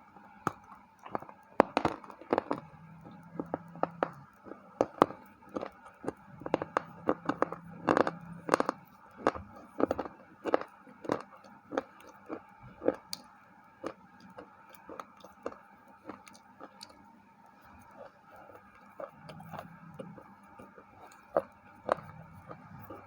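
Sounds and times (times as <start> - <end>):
crunching and chewing wafer: 0.4 - 23.0.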